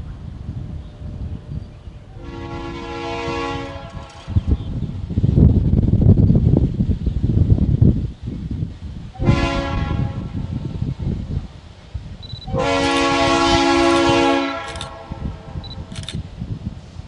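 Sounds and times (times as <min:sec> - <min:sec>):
low wind rumble: 0:00.0 - 0:17.0
locomotive air horn blasts: 0:02.2 - 0:04.4, 0:09.2 - 0:10.4, 0:12.5 - 0:15.9.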